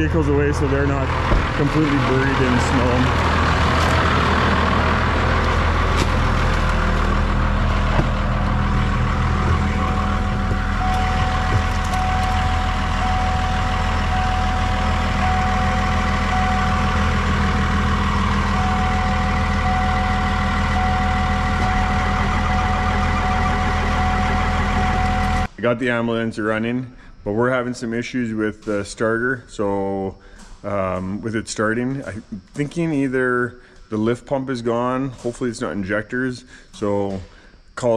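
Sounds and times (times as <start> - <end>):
truck engine running: 0.0 - 25.5
high beeping tone: 8.5 - 25.5.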